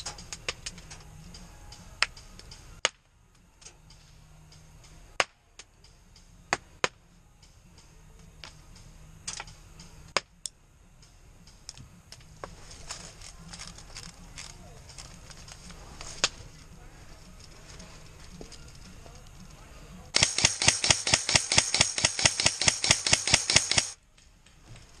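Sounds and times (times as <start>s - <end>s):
airsoft gun shots: 20.2s - 24.0s
small ticks and clicks: 20.2s - 25.0s.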